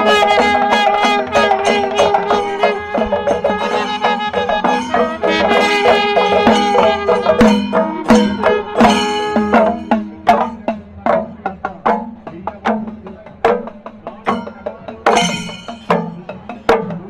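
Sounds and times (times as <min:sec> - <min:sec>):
sustained melody notes: 0:00.0 - 0:11.0
drum strokes: 0:00.0 - 0:17.0.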